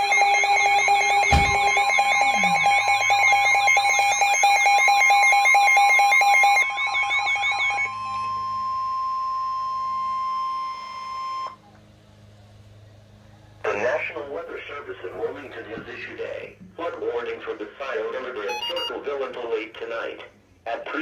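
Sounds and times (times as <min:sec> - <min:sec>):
alarm of rapid repeating beeps: 0:00.0 - 0:11.6, 0:18.4 - 0:19.0.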